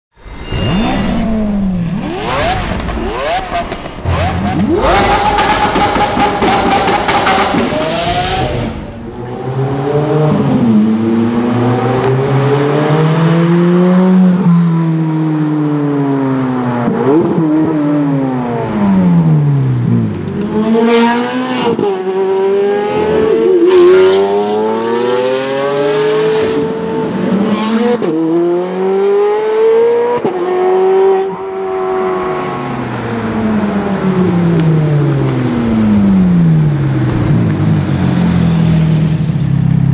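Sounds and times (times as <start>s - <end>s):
sports car engine revving: 0.7s - 14.2s.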